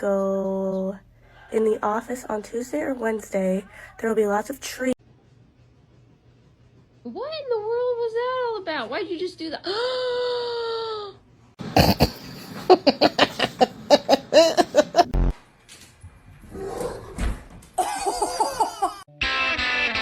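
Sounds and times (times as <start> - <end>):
person laughing: 11.6 - 15.2, 17.8 - 19.0.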